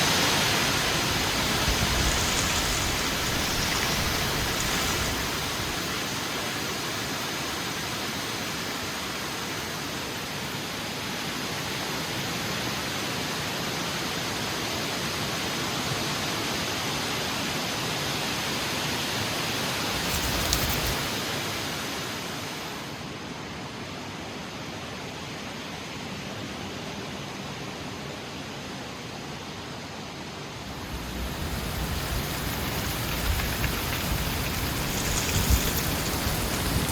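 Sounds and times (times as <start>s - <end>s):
heavy wind rushing: 30.6s - 36.9s.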